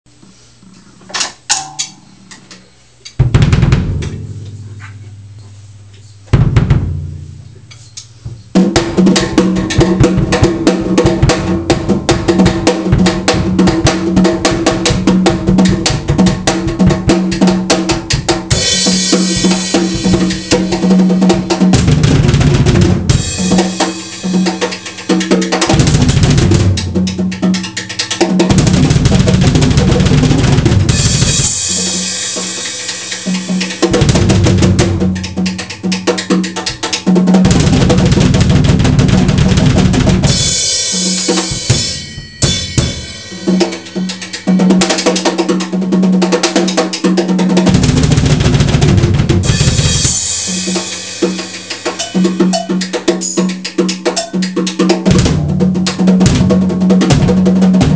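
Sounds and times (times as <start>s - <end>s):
drum kit played fast: 1.1s - 57.9s
cymbal crashes: 40.2s - 44.9s.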